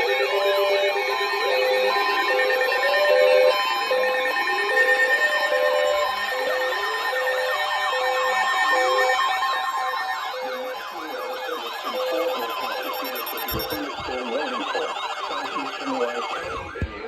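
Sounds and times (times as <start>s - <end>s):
sirens sweeping up and down: 0.0s - 17.0s
pulsing beep tone: 5.8s - 17.0s.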